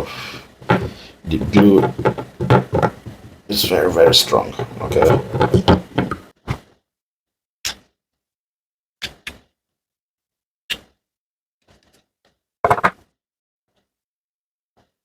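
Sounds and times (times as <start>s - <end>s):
small plastic parts knocking and clicking: 0.6s - 6.3s, 12.6s - 13.1s.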